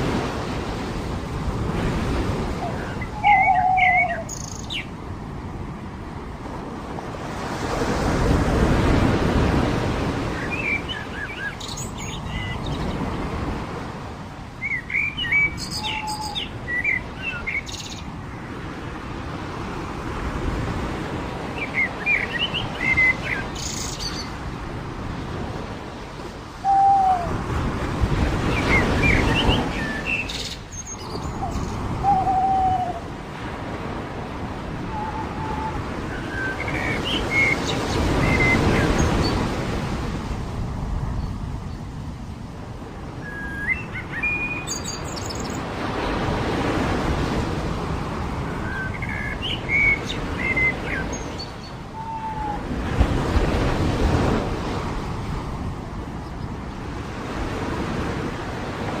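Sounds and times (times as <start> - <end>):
surf washing onto beach: 0.0 - 3.2
birds chirping: 2.5 - 5.0, 14.6 - 18.2, 28.3 - 33.1, 34.7 - 39.6, 48.5 - 52.6.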